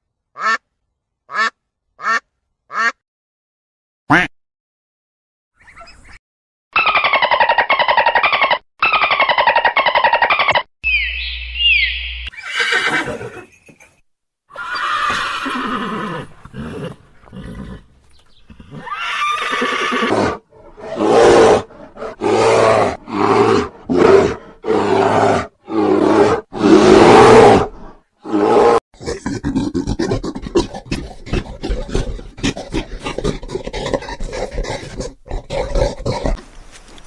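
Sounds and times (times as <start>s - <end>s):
horses neighing: 12.3s - 13.6s, 14.5s - 17.9s, 18.5s - 26.0s.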